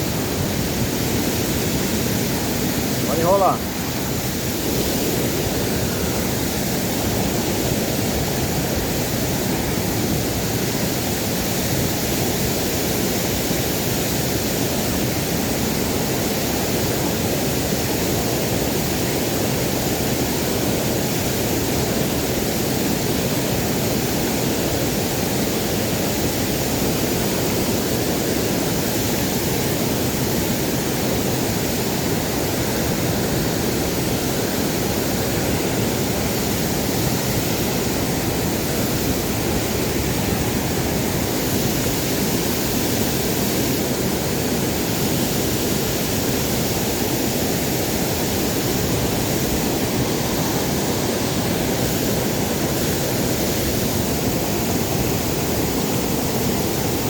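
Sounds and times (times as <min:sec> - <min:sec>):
waterfall rushing: 0:00.0 - 0:08.2, 0:31.0 - 0:57.0.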